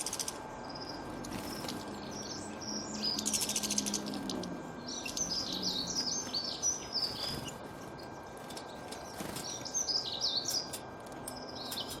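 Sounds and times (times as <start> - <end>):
songbird chirping: 0.0 - 12.0.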